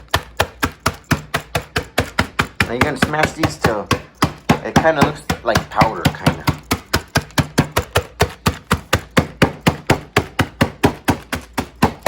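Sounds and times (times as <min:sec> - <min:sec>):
hammer pounding chips in plastic bag: 0:00.0 - 0:12.0.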